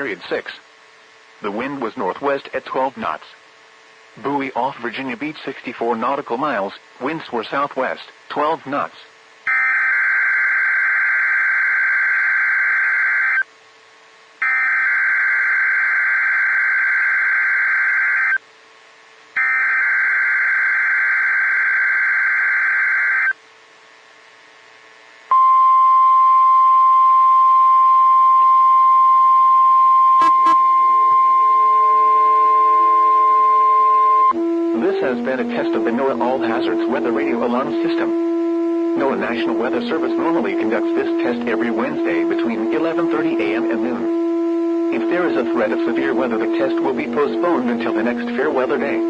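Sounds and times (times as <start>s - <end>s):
warbling data tone screech: 9.5s - 13.5s, 14.4s - 18.4s, 19.4s - 23.4s, 30.0s - 38.2s.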